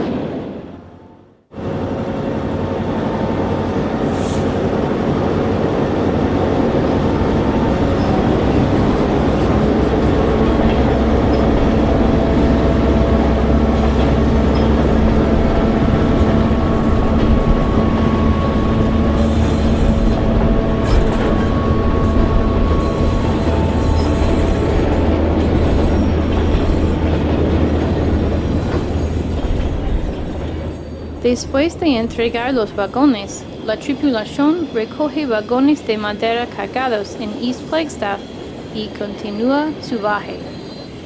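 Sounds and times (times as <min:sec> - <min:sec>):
train cars rolling: 0:00.0 - 0:41.0
locomotive engine drone: 0:00.7 - 0:40.6.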